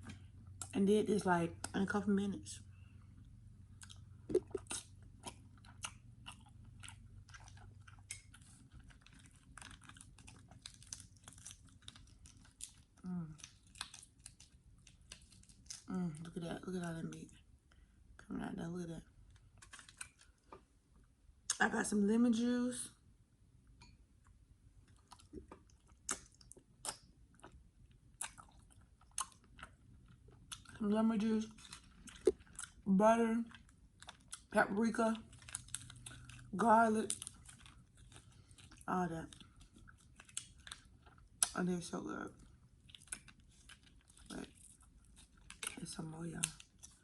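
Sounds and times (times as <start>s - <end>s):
faint low hum: 0.0s - 47.0s
crunching shells and chewing: 2.8s - 15.9s, 24.2s - 41.6s, 42.2s - 47.0s
wet clicks and smacks: 3.8s - 12.8s, 24.9s - 27.6s.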